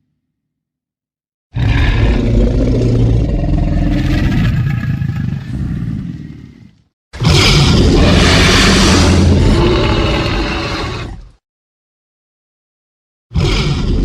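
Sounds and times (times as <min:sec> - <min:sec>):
deep rough dinosaur roar: 0:01.5 - 0:11.4, 0:13.3 - 0:14.0.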